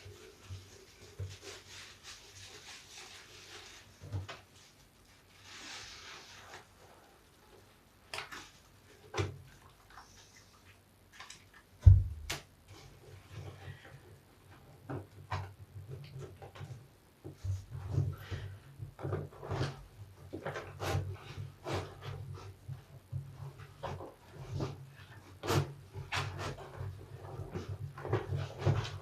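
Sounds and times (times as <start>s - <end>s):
wet squishing of sponge: 0.0s - 11.9s
low thump: 11.8s - 12.3s.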